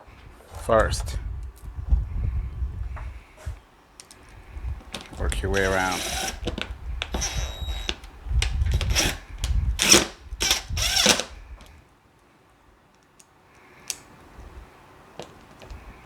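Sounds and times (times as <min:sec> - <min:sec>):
power tool spurts: 0:04.9 - 0:11.3.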